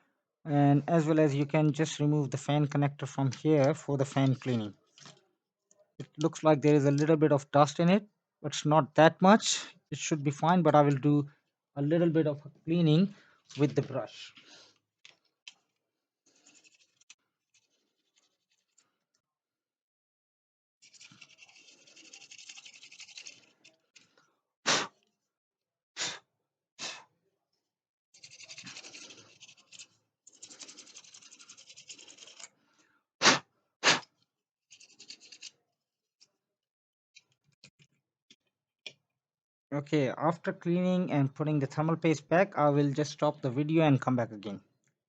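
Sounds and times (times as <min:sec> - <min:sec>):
brush scratching on fan: 0:16.3 - 0:18.8, 0:20.8 - 0:23.7, 0:28.2 - 0:32.5.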